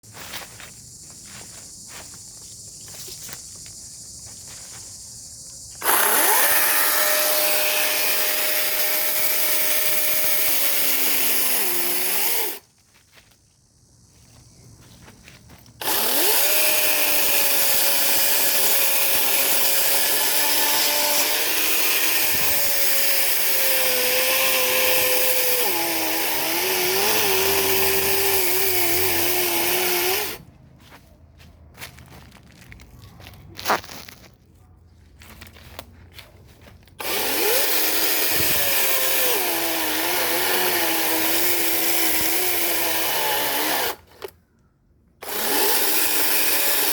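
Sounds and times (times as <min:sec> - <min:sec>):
electric chainsaw cutting: 0:05.8 - 0:12.6, 0:15.8 - 0:30.4, 0:37.0 - 0:44.3, 0:45.2 - 0:46.9.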